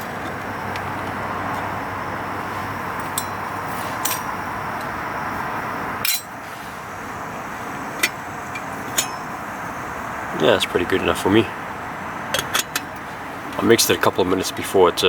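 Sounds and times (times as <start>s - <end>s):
metallic clinks of camp cookware: 3.0s - 3.4s, 6.0s - 6.4s, 8.0s - 9.4s.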